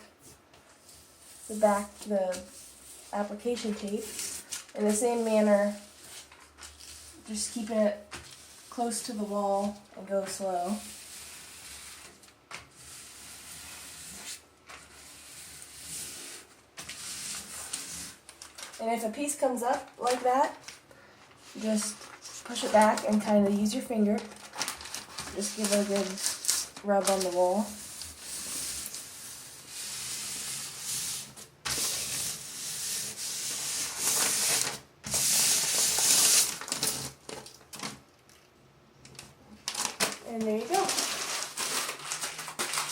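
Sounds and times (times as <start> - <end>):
decal rubbed on wall: 27.7 - 36.5.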